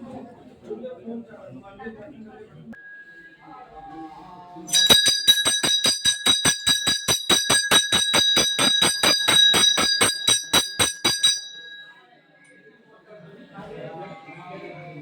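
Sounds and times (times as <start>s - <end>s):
temple bell ringing: 4.7s - 13.1s.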